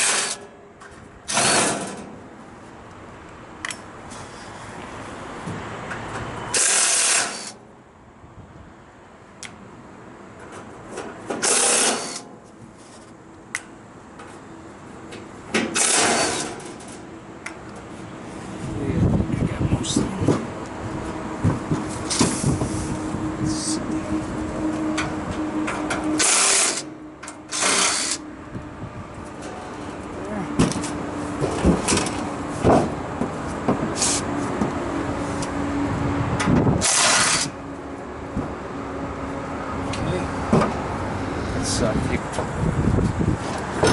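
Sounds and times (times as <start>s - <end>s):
compressor hum: 11.8s - 43.9s
power drill-driver running: 27.5s - 28.2s.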